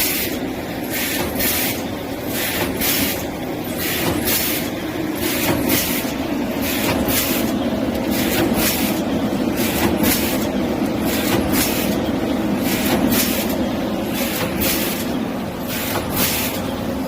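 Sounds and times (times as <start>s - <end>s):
packaging machine motor hum: 0.0s - 17.0s.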